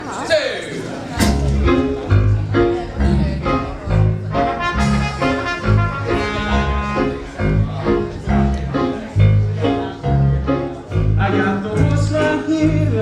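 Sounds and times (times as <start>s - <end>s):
swing brass instrumental: 1.2s - 13.0s.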